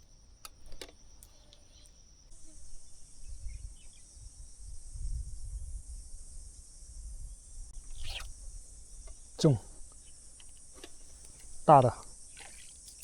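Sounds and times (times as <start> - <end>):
faint clicks: 0.0 - 2.6, 7.8 - 13.0
high-pitched insect drone: 1.0 - 13.0.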